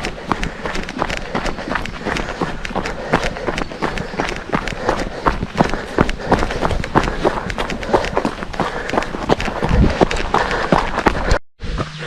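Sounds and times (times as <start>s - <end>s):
footsteps on dirt trail: 0.0s - 11.4s.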